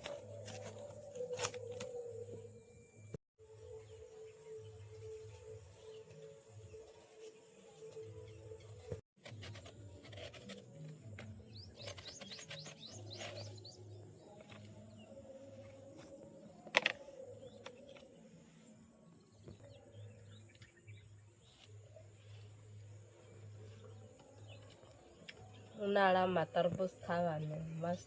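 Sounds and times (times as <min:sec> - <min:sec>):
faint background music: 0:00.0 - 0:28.0
birds chirping: 0:11.2 - 0:28.0.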